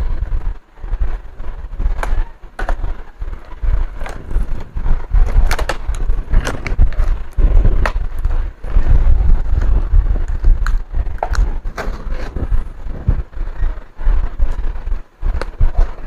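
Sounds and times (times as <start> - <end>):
low uneven rumble: 0.0 - 16.0
plastic laptop parts clicking: 1.9 - 8.3, 9.6 - 12.5.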